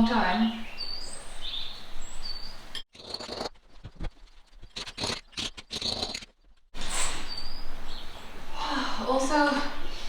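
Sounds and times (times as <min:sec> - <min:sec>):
rubble scraping and rattling: 0:02.8 - 0:06.8.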